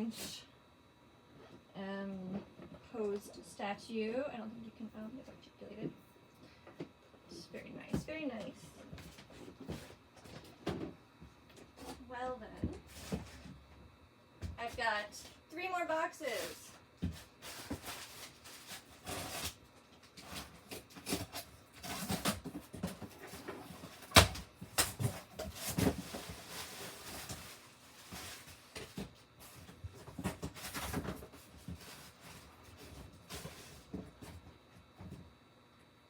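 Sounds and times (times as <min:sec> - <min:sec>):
cardboard boxes rustling and scraping: 0:12.8 - 0:13.6, 0:20.2 - 0:35.2.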